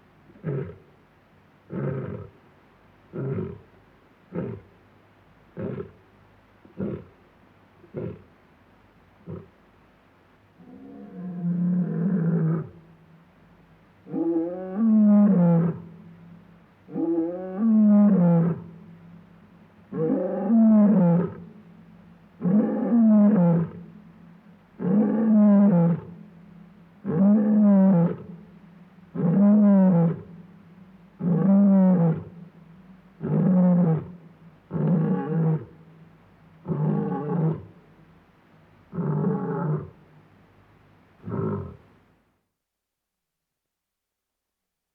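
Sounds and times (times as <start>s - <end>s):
lion roaring: 24.8s - 26.2s, 31.2s - 32.4s, 33.2s - 35.8s, 36.6s - 37.8s, 38.9s - 40.0s, 41.2s - 41.8s.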